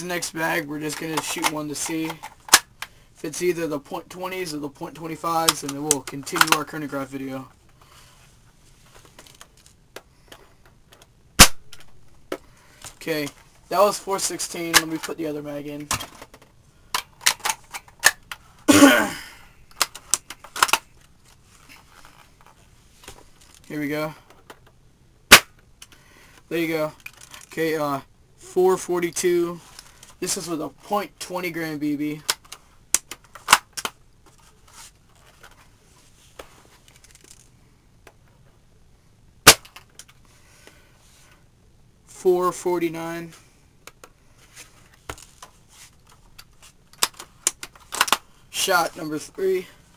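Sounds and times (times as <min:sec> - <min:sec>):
airsoft rifle shot: 0:11.4 - 0:11.6, 0:25.3 - 0:25.5.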